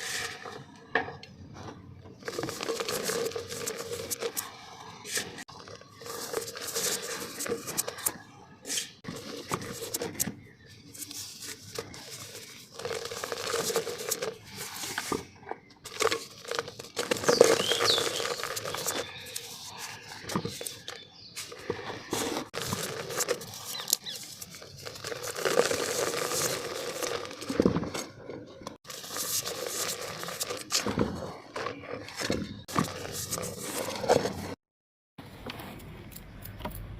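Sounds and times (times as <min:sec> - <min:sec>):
dry mud crunching by hand: 0:02.2 - 0:34.5.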